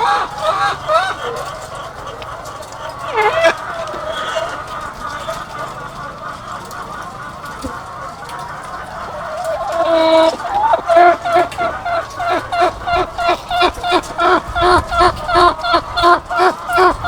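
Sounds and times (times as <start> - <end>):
flock of hens clucking: 0.0 - 17.0
hen calling loudly: 8.7 - 17.0.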